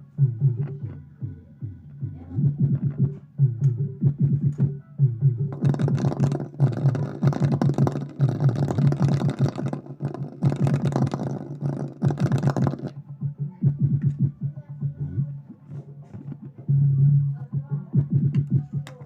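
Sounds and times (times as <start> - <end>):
electronic music with heavy bass: 0.0 - 19.0.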